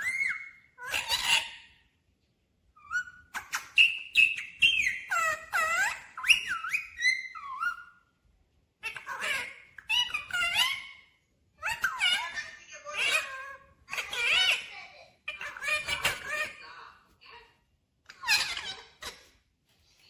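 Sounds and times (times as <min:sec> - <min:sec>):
parrot whistling and calling: 0:00.0 - 0:01.8, 0:02.8 - 0:08.1, 0:08.9 - 0:14.7.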